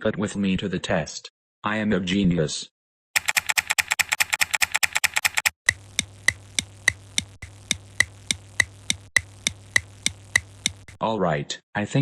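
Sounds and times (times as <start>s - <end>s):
computer keyboard typing: 3.2s - 11.0s
slow evenly spaced clicks: 3.2s - 11.0s
steady low hum: 5.7s - 11.0s.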